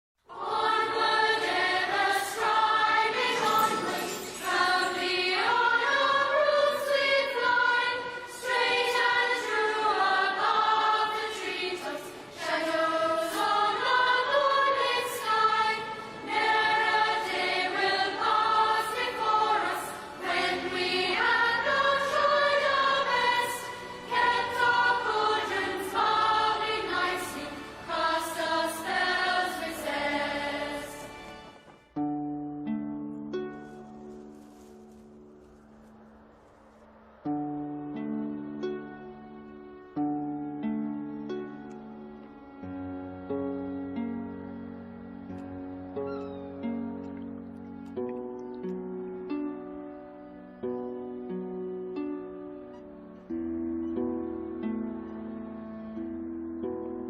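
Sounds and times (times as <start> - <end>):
song with group vocals and band: 0.3 - 31.2.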